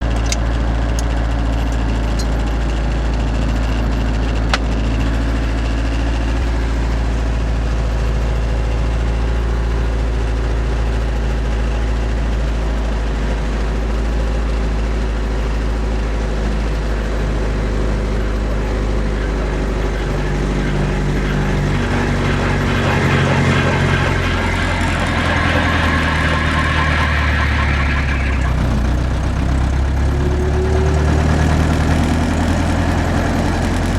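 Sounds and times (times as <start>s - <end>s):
helicopter piston engine running: 11.1s - 33.9s
helicopter rotors spinning: 14.0s - 33.9s.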